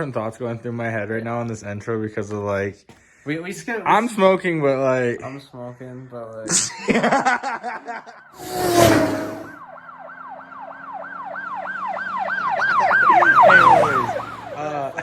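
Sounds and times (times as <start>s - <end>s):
siren yelping: 8.0s - 14.7s.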